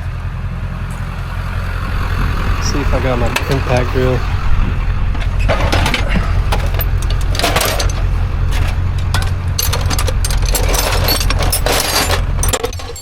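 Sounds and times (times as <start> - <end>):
vehicle engine idling: 0.0 - 13.0
metal tools clinking: 5.4 - 13.0.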